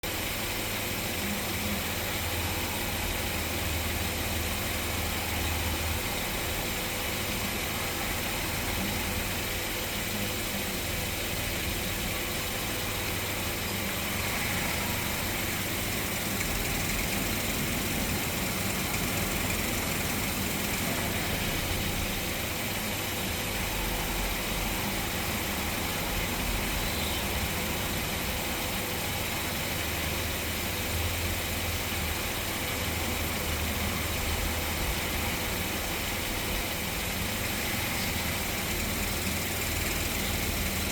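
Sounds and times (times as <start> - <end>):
constant hiss: 0.0 - 40.9
car engine running: 11.2 - 22.9.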